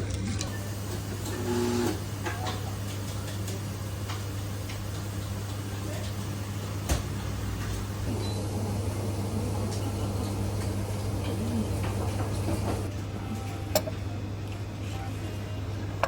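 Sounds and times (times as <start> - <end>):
faint murmur: 0.0 - 16.0
steady low hum: 6.4 - 16.0.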